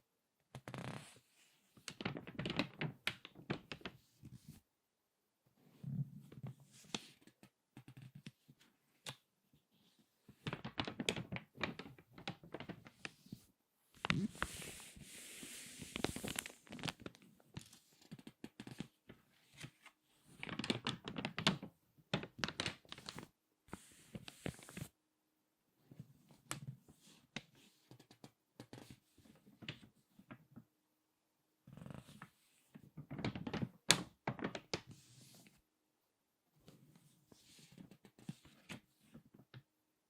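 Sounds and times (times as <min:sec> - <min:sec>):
magazine pages crackling: 0:15.8 - 0:18.8.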